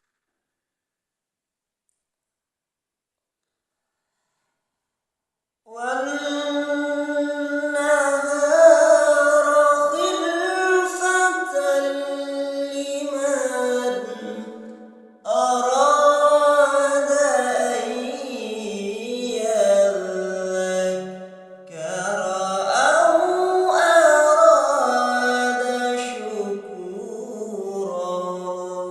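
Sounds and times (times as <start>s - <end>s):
person chanting recitation: 5.7s - 14.7s, 15.3s - 28.9s.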